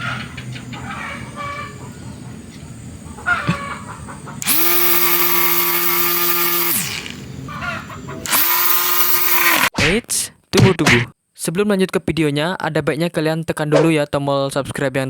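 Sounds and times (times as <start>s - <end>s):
electric motor high whine: 4.4s - 7.5s, 8.2s - 9.7s.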